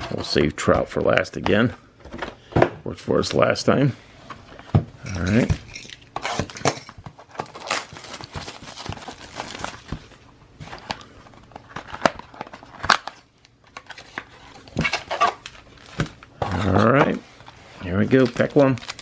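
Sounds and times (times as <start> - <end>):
foil wrappers crinkling: 5.2 - 19.0.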